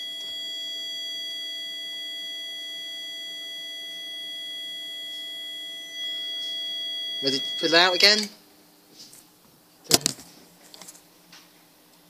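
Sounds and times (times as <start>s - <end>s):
fire alarm high-pitched tone: 0.0s - 8.3s.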